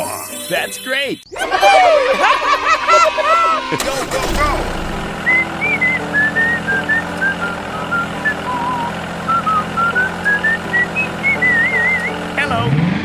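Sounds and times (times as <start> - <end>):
person whistling a tune: 5.1 - 12.6.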